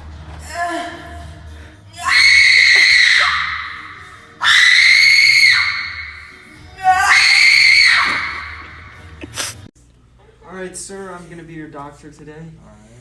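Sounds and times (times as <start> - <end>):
high-pitched screams: 2.0 - 8.8.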